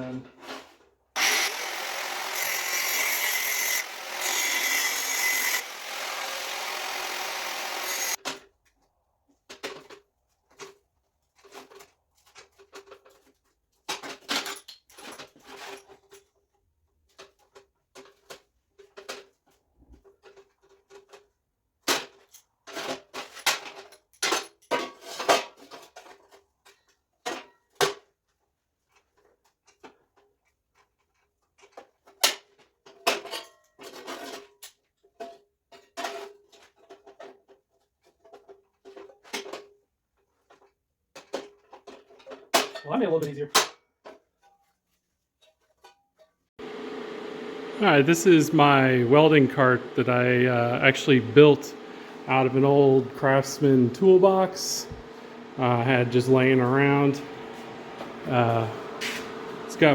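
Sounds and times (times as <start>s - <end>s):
power tool cutting sheet steel: 1.2s - 8.2s, 46.6s - 59.9s.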